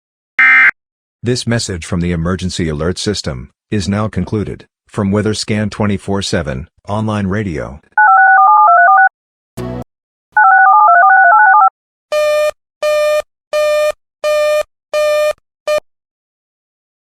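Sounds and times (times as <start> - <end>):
electronic tone jingle: 10.4 - 11.7.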